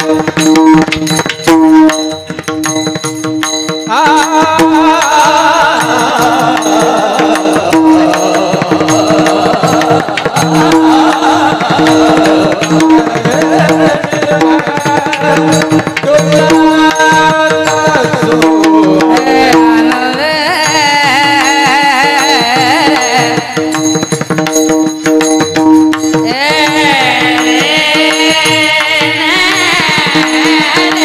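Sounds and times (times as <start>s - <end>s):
hand drum rhythm: 0.0s - 31.0s
person singing: 3.9s - 24.1s, 26.1s - 31.0s.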